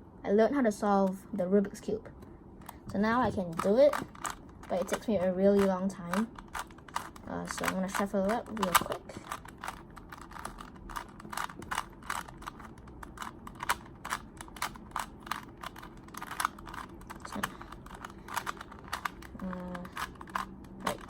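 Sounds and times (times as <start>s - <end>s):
puzzle cube layers clicking: 3.4s - 21.0s.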